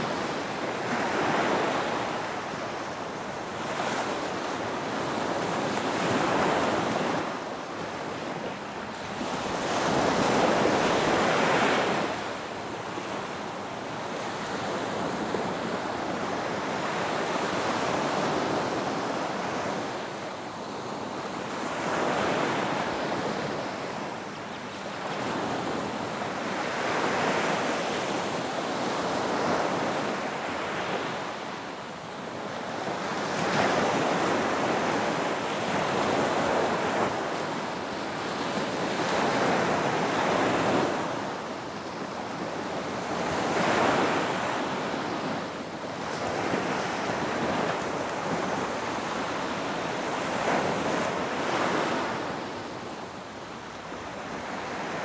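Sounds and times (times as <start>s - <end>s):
ocean waves breaking on beach: 0.0s - 55.0s.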